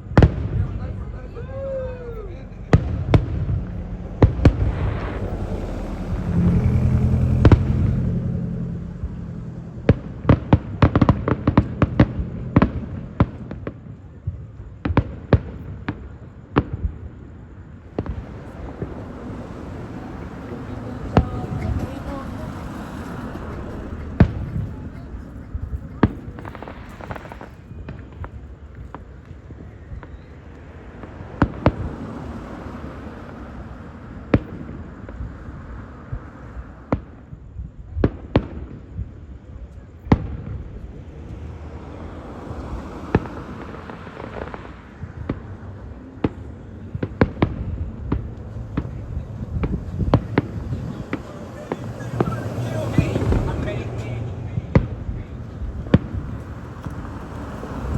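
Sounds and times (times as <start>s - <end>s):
low rumble: 0.0s - 13.5s, 17.8s - 29.0s, 47.3s - 57.9s
fireworks crackling pops: 2.7s - 36.2s, 42.4s - 57.9s.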